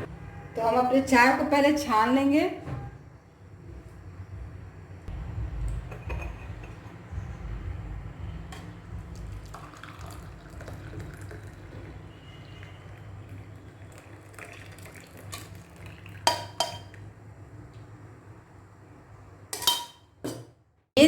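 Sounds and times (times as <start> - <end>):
steady low hum: 4.2 - 11.4
liquid pouring through a strainer: 9.1 - 16.5.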